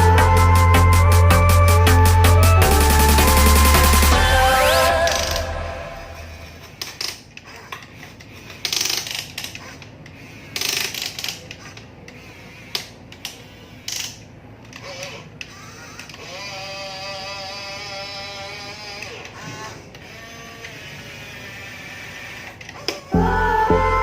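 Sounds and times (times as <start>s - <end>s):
plastic gears clicking and clattering: 6.8s - 16.3s.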